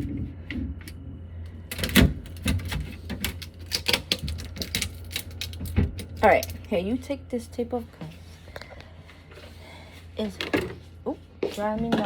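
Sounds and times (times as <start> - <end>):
steady low hum: 0.0 - 12.0
plastic refrigerator drawers clicking: 1.7 - 6.2.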